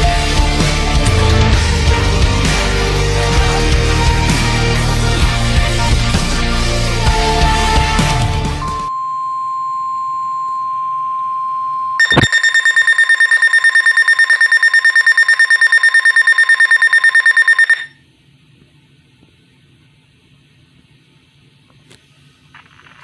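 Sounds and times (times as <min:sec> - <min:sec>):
steady warning alarm tone: 0:01.1 - 0:02.2, 0:12.0 - 0:18.0
rapid shrill alarm beeps: 0:12.0 - 0:18.0.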